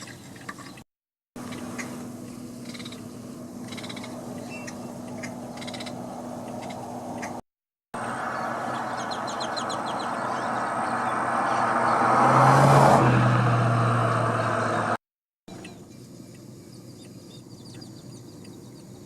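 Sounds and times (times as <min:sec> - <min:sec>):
bird chirping: 0:01.4 - 0:07.4, 0:08.1 - 0:12.1, 0:15.5 - 0:19.0
vehicle passing by: 0:01.4 - 0:07.4, 0:08.0 - 0:15.0.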